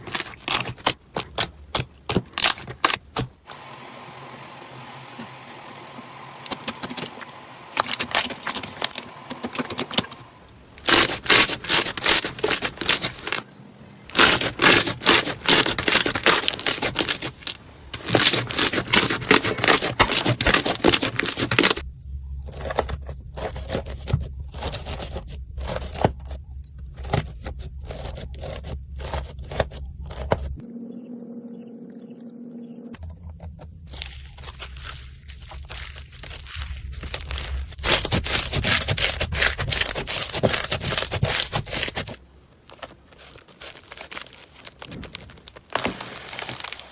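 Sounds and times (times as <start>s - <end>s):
slime crackling and popping: 0.0s - 3.3s, 10.8s - 13.4s, 14.1s - 21.8s
low hum: 15.8s - 38.5s.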